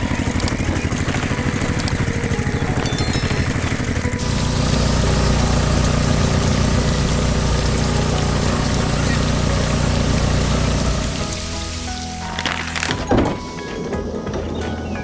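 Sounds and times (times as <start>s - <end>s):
tractor engine running: 0.0s - 15.0s
continuous hiss: 1.9s - 13.5s.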